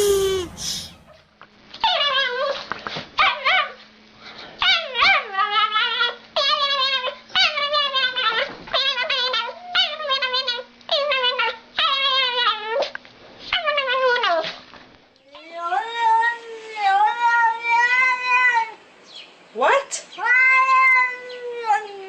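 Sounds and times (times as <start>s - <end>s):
dog whining and yipping: 1.8s - 2.6s, 3.2s - 3.8s, 4.6s - 14.6s.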